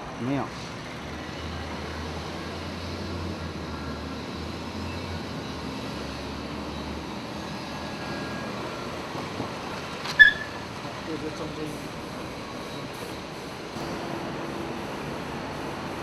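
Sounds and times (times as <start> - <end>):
parking system mechanical whir: 0.8 - 16.0
low hum: 13.8 - 16.0.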